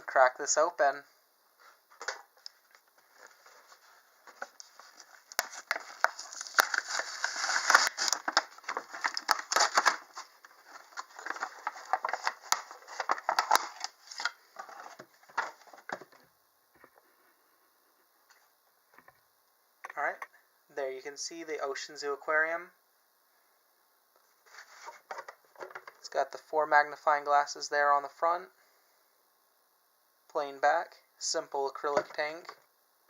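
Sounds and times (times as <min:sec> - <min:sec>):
packaging rustling and crinkling: 0:02.6 - 0:16.0.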